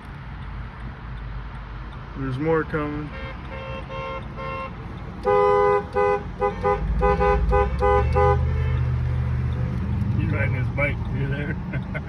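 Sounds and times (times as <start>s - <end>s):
car horns honking: 2.9s - 11.1s.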